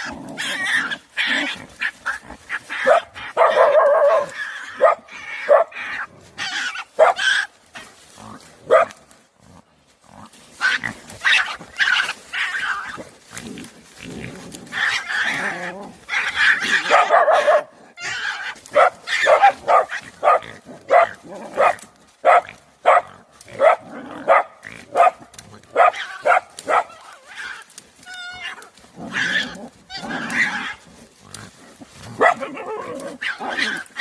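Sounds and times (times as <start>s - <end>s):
dogs barking: 0.0s - 7.5s, 8.7s - 9.0s, 16.2s - 27.3s, 31.9s - 34.0s
dogs growling and snarling: 0.0s - 34.0s.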